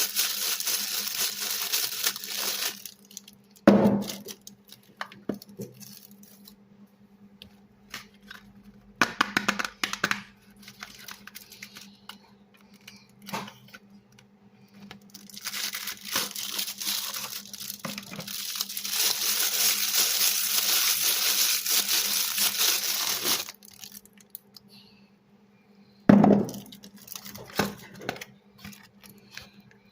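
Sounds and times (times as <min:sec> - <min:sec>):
soap crumbling: 0:00.0 - 0:06.5, 0:15.0 - 0:24.5
soap crunching and crackling: 0:15.0 - 0:24.5.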